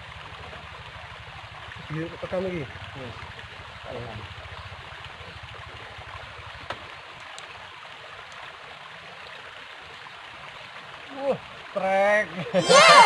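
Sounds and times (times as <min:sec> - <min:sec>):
river water flowing: 0:11.2 - 0:13.0.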